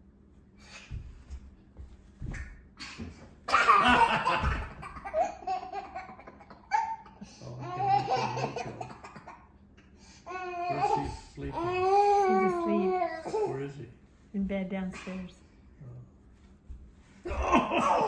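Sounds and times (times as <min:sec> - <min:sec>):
young child laughing: 0:02.8 - 0:09.4, 0:17.3 - 0:18.0.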